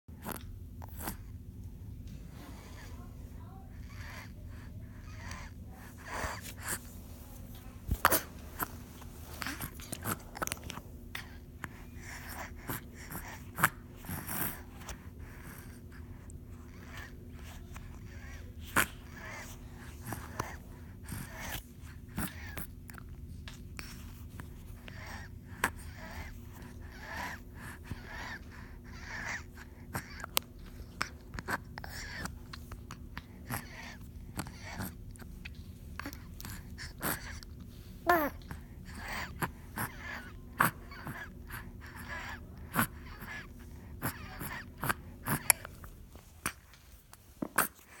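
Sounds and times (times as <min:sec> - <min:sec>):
baby small vocal sounds: 0:02.7 - 0:06.8, 0:24.7 - 0:46.7
baby wheezy breathing: 0:36.0 - 0:46.6.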